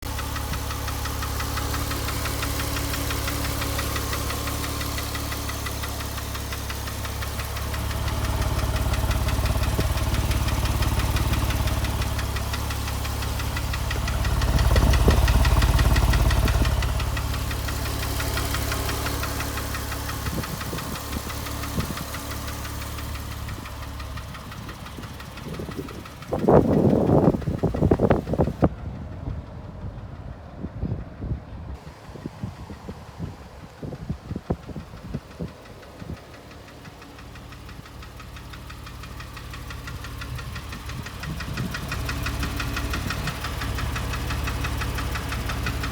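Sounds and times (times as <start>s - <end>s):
car engine revving with knocking: 0.0s - 28.7s, 34.0s - 45.9s.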